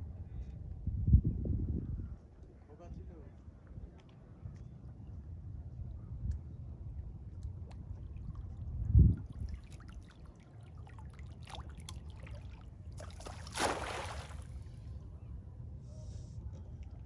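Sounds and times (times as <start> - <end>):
water trickling and splashing: 9.2 - 14.6.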